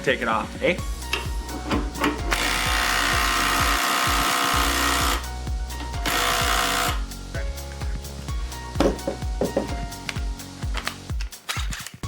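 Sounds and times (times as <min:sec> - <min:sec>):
background music with beat: 0:00.0 - 0:12.0
impact wrench hammering: 0:01.1 - 0:05.2.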